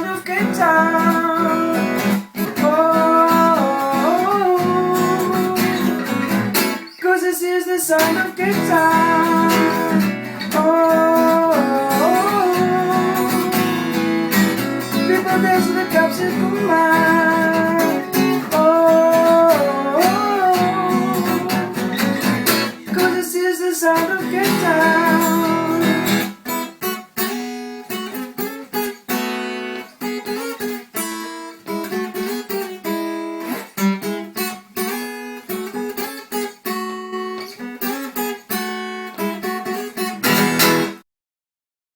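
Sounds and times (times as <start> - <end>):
person singing wordless melody: 0.0 - 6.2, 6.8 - 26.2
acoustic guitar strumming: 0.0 - 41.0.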